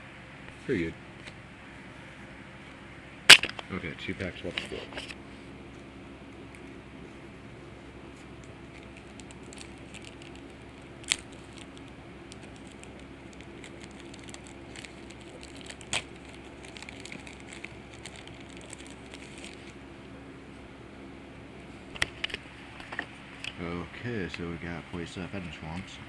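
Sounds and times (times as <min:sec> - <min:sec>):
foil wrapper crinkling: 0:08.2 - 0:19.8.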